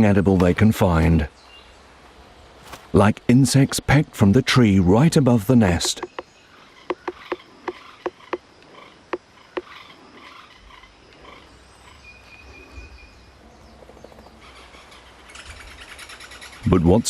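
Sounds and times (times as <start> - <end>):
forest insects chorus: 0.0 - 17.0
frogs calling: 4.2 - 17.0
woodpecker pecking on wood: 5.6 - 9.8.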